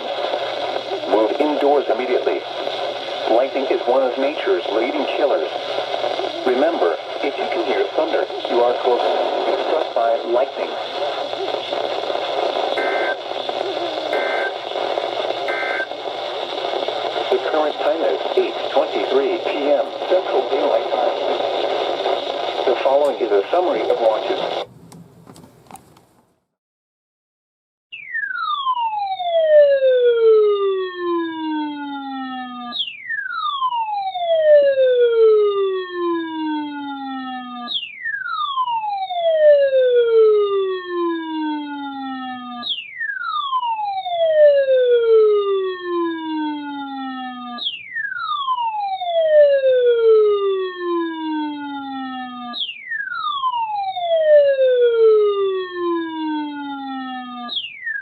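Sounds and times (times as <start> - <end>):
weather alert radio siren alarm: 0.0 - 24.6, 28.0 - 58.0.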